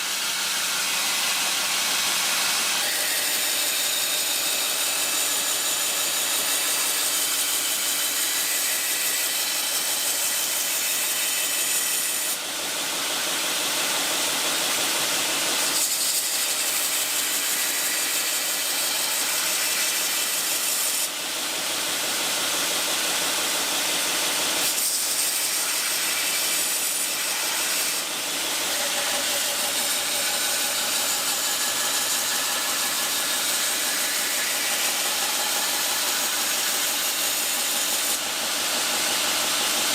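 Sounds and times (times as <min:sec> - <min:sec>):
grinder motor: 0:00.0 - 0:39.9
belt grinder grinding steel: 0:23.8 - 0:39.9.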